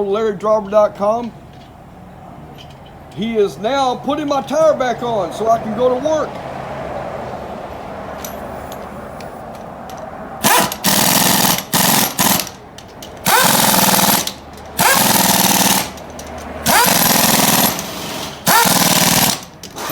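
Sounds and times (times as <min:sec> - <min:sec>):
impact wrench hammering: 0:09.9 - 0:19.9.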